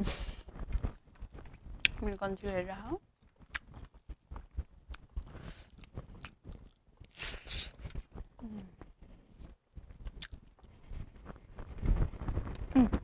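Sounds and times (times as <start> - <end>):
chewing and biting food: 0.6 - 2.2, 3.2 - 8.3, 9.4 - 11.1
wet mouth clicks and smacks: 3.2 - 7.2, 10.0 - 10.5.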